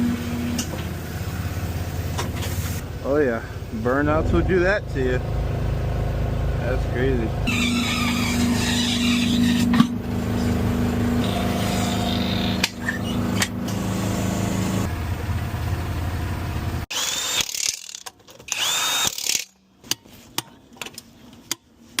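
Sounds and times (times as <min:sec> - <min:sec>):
power tool whirring: 0:07.5 - 0:09.8, 0:16.9 - 0:19.6.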